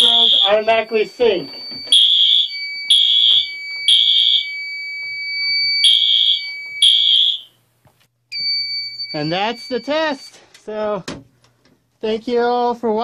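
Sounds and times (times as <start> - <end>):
fire alarm horn blasts: 0.0 - 7.5
steady high alarm tone: 0.0 - 7.6, 8.3 - 10.4.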